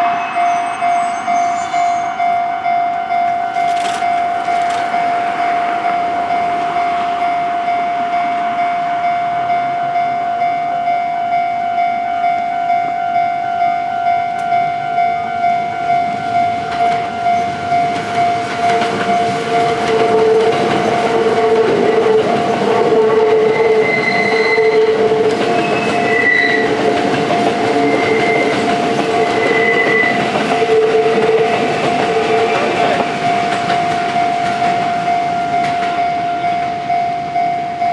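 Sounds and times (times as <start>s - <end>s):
high wheel squeaks: 0.0s - 6.6s, 16.7s - 36.4s
level crossing bell dinging: 0.0s - 21.6s, 33.2s - 37.9s
diesel railcar train passing: 0.0s - 37.9s.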